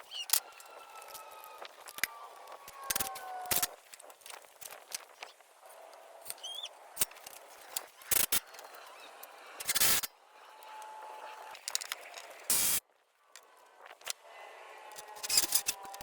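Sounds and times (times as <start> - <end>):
bird chirp: 6.3 - 6.8.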